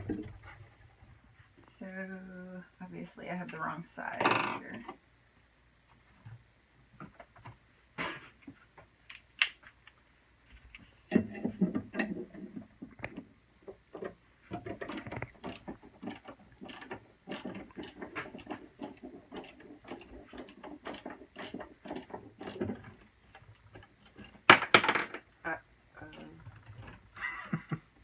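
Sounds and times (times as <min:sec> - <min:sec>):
ratcheting hand tool clicking: 0:14.8 - 0:22.8.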